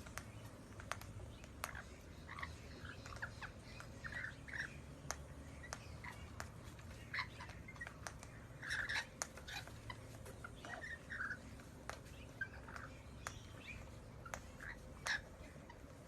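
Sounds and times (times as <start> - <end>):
sharp clicks: 0.0 - 1.9
small birds chirping: 0.0 - 16.0.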